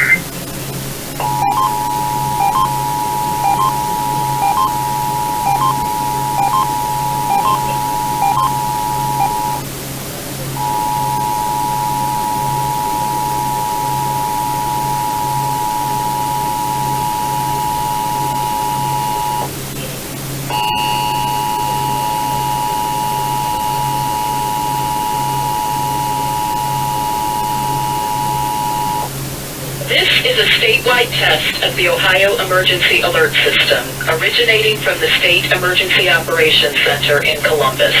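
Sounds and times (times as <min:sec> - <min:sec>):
two-tone alert signal over radio: 0:00.0 - 0:00.2, 0:01.2 - 0:09.7
faint higher tones: 0:01.2 - 0:09.7
steady hiss: 0:28.4 - 0:38.0.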